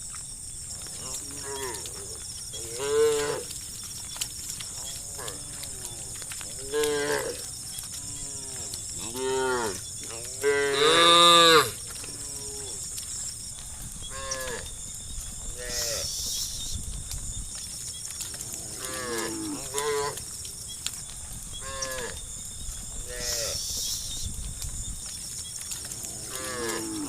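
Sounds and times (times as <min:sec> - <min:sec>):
cattle mooing: 0:04.8 - 0:12.8, 0:21.6 - 0:22.2, 0:26.0 - 0:27.0.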